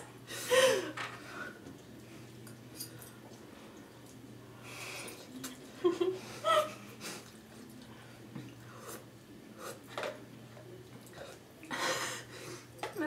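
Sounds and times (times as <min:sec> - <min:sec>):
people eating noodles: 0:00.3 - 0:12.8.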